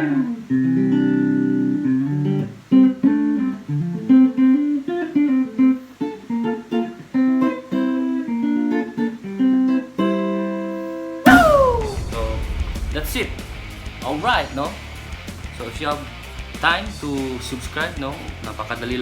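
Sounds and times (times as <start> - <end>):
clean electric guitar melody: 0.0 - 12.6.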